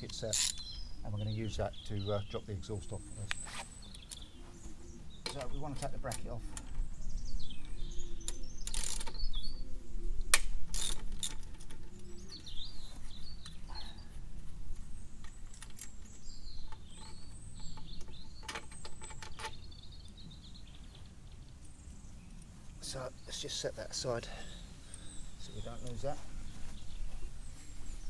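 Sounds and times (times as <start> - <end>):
faint bird chirps: 0.0 - 10.3, 11.6 - 28.0
socket ratchet clicking: 0.1 - 0.7, 8.7 - 9.2, 10.4 - 11.7.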